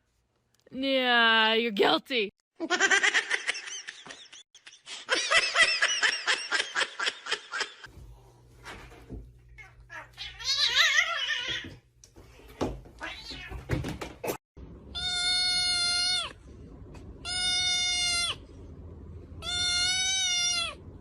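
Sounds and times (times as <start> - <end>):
cats meowing: 9.5 - 11.8, 12.4 - 13.8, 15.0 - 16.4, 17.2 - 18.4, 19.4 - 20.8.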